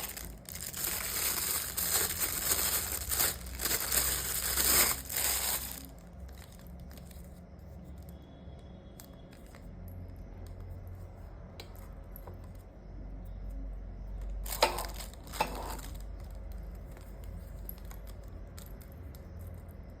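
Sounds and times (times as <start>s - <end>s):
sharp crackles: 0.0s - 7.3s
packaging crinkling: 0.0s - 7.4s, 14.4s - 18.0s
low steady hum: 0.0s - 20.0s.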